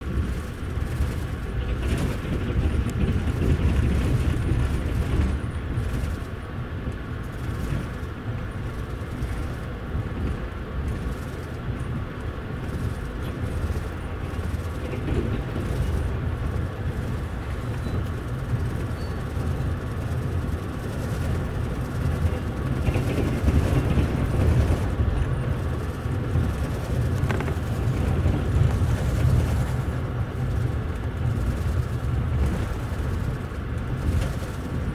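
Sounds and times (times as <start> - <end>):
train low rumble: 0.0 - 34.9
wheels knocking over rails: 26.3 - 29.9.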